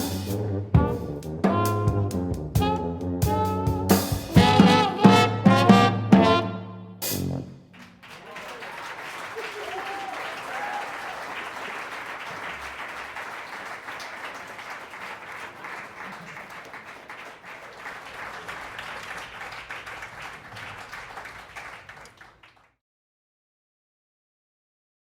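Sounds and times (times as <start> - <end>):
audience applauding and cheering: 7.8 - 22.7.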